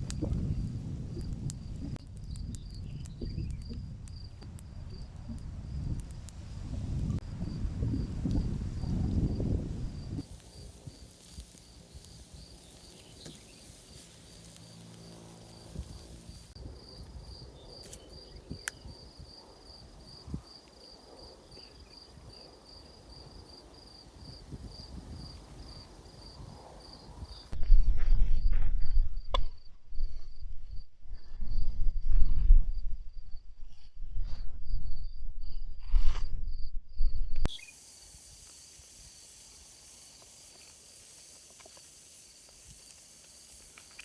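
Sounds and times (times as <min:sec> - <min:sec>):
insects chirping: 0:07.4 - 0:27.6, 0:37.5 - 0:44.0.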